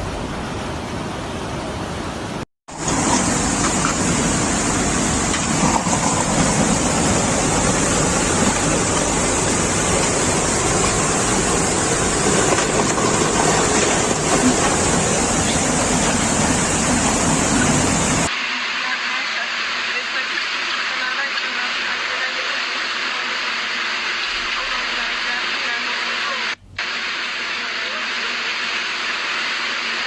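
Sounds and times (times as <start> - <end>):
floodwater rushing: 2.7 - 18.3.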